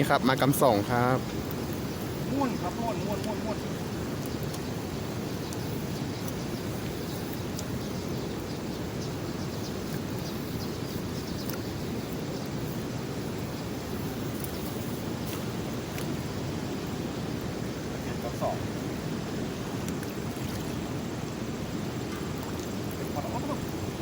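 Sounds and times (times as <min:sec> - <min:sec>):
steady rushing outdoor noise: 0:00.0 - 0:24.0
faint clicks: 0:05.4 - 0:06.4.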